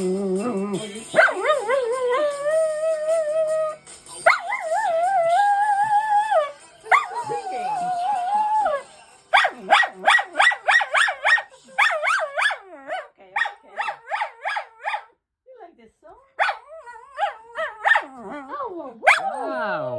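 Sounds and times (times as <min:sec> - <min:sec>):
dog howling: 0:01.2 - 0:08.8, 0:16.4 - 0:19.6.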